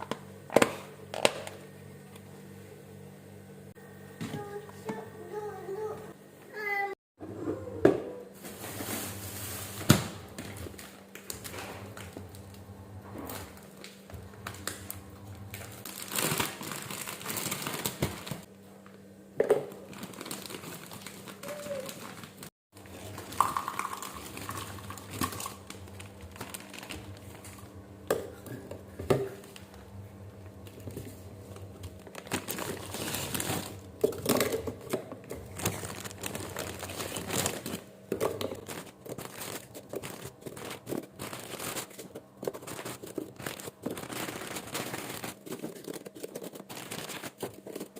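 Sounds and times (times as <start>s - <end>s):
crinkling and rustling: 8.4s - 18.5s, 19.6s - 27.7s, 30.6s - 47.9s.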